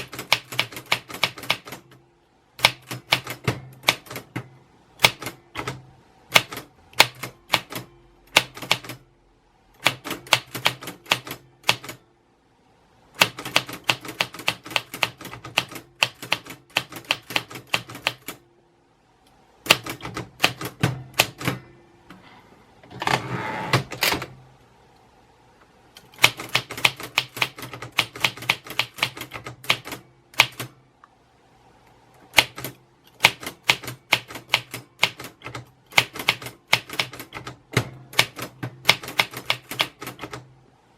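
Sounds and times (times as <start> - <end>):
typewriter keys clicking: 0.0 - 2.0, 2.6 - 4.4, 5.0 - 9.0, 9.8 - 12.0, 13.2 - 18.4, 19.7 - 21.6, 26.0 - 30.7, 32.4 - 40.4
typewriter rasping: 32.4 - 40.4.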